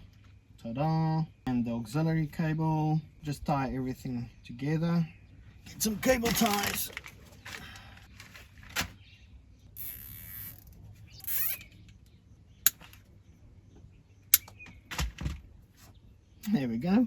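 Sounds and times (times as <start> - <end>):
cable ties ratcheting: 9.8 - 11.7
sharp plastic clicks: 12.7 - 13.0, 14.4 - 15.1.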